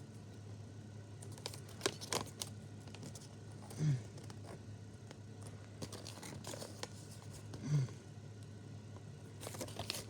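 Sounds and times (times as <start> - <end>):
low hum-like voice sound: 3.2 - 4.8, 5.4 - 10.0.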